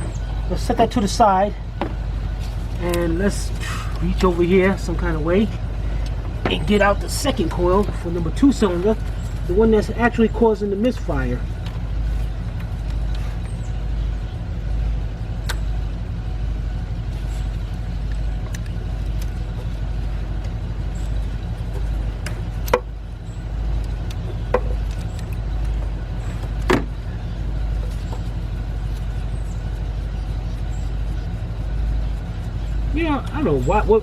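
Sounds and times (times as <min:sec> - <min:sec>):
steady low rumble: 0:00.0 - 0:34.0
tools clicking and knocking: 0:24.1 - 0:25.8.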